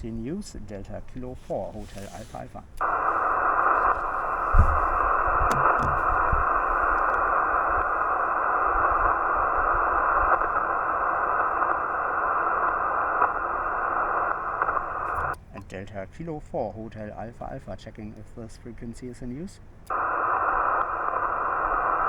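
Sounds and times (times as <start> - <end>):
radio receiver hiss: 0.0 - 22.0
faint low thumps: 3.7 - 7.8.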